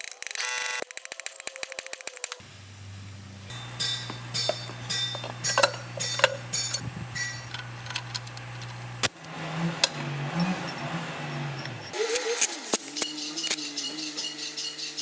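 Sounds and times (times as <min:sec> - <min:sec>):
low hum: 0:02.4 - 0:09.1
metallic clinks of tools: 0:03.5 - 0:08.8.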